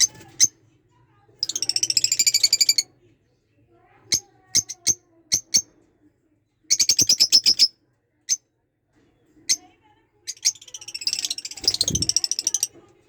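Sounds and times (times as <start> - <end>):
small bird chirping: 1.4 - 2.9, 4.1 - 5.7, 6.7 - 7.7, 9.5 - 12.8.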